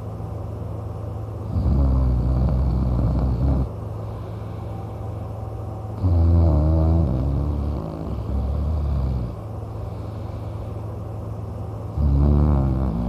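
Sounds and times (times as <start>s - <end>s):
steady low hum: 0.0s - 13.0s
man snoring: 1.4s - 3.7s, 6.0s - 9.4s, 11.9s - 13.0s.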